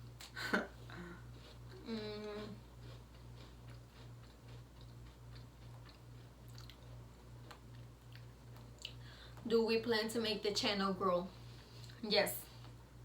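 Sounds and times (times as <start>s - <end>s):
person chewing: 0.1s - 9.4s.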